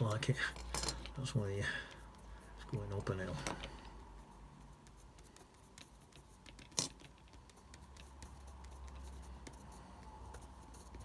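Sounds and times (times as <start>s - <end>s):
paintbrush tapping on paper: 4.8s - 11.0s.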